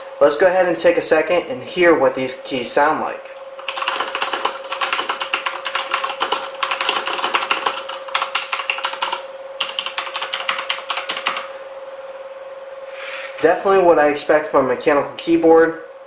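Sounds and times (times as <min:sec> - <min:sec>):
mechanical keyboard typing: 0:03.6 - 0:11.5.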